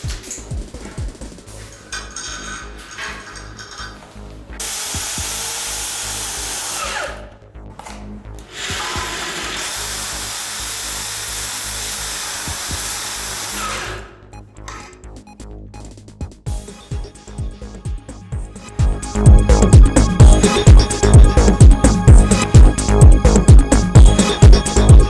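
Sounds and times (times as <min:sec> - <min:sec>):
electric power drill whining: 0:04.6 - 0:07.3, 0:08.4 - 0:14.2.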